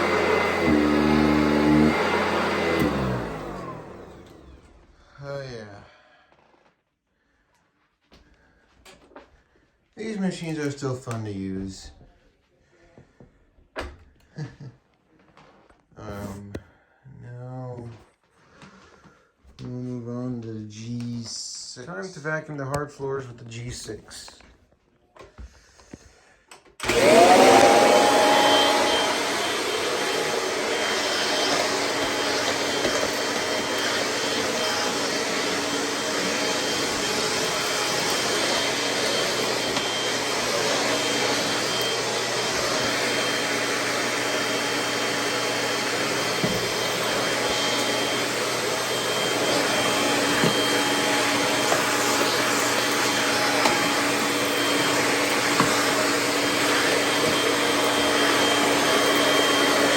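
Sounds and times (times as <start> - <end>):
vacuum cleaner motor whining: 0.0 - 5.0, 26.8 - 59.9.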